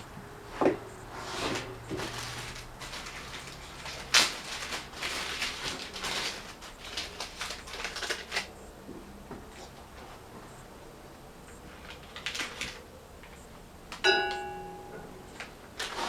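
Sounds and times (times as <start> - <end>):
objects rustling and clicking: 0.5 - 8.7, 11.4 - 16.0.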